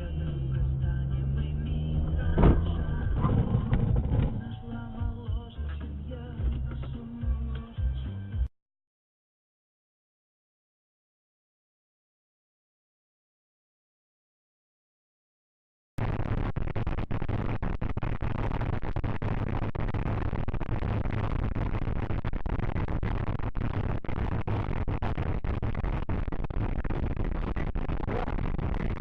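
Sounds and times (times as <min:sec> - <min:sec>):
vehicle rumble: 0:00.0 - 0:07.7.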